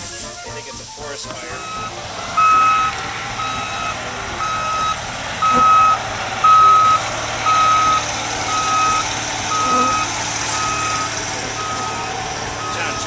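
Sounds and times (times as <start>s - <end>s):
vehicle backup alarm beeping: 1.3s - 13.0s.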